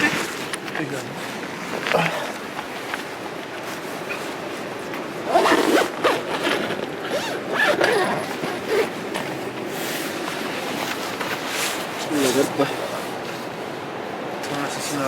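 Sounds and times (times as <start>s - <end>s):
tent zipper pulled: 5.1s - 13.0s.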